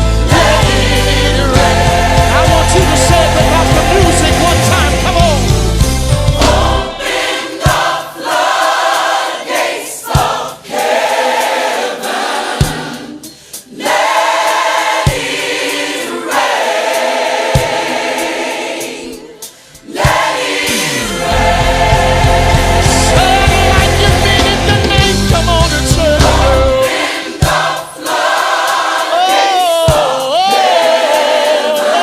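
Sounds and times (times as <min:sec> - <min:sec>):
low drum beat: 0:00.0 - 0:07.1, 0:21.2 - 0:27.7
band playing: 0:00.0 - 0:13.2, 0:13.9 - 0:32.0
gospel choir singing: 0:00.0 - 0:32.0.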